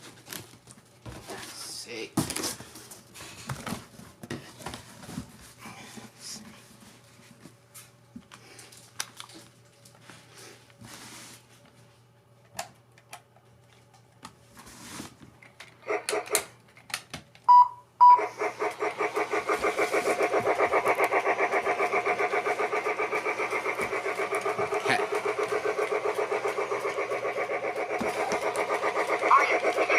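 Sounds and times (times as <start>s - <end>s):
toy train motor pulsing: 15.8s - 16.5s, 18.0s - 29.9s.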